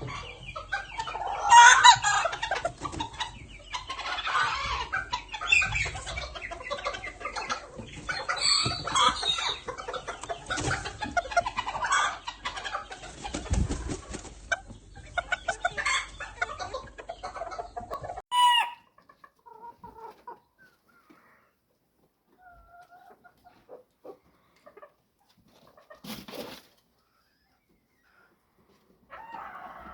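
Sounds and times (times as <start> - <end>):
chickens clucking: 0.0 - 29.9
loud chicken call: 1.2 - 2.2, 18.3 - 18.9, 29.1 - 29.9.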